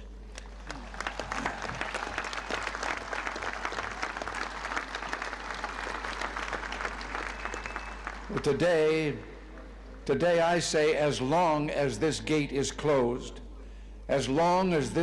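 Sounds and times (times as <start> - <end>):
crowd applauding: 0.0 - 8.7.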